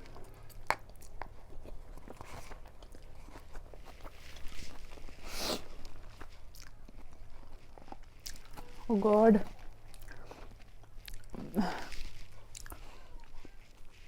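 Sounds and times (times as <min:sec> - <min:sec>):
person chewing noodles: 0:00.0 - 0:14.0.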